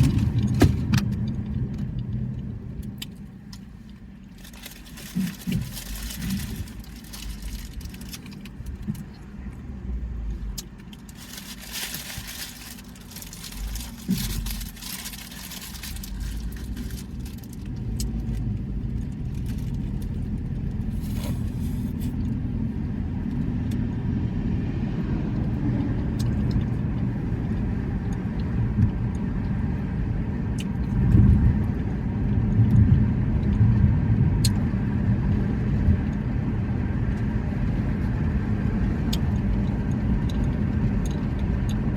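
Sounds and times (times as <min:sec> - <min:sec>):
car low rumble: 0:00.0 - 0:41.9.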